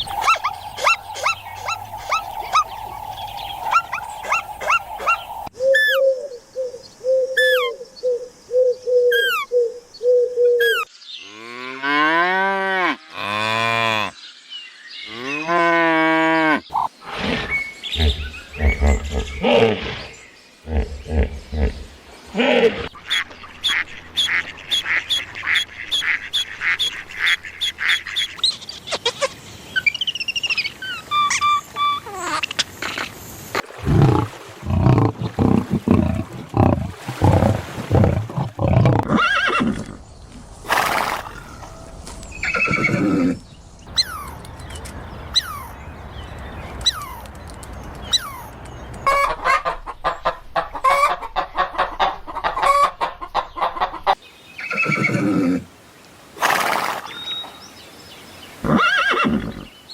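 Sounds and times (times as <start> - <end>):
farm animal calls: 0.0 - 2.8, 3.4 - 6.3, 7.2 - 7.8, 8.6 - 9.7, 15.1 - 29.3, 42.4 - 44.4, 48.1 - 55.7.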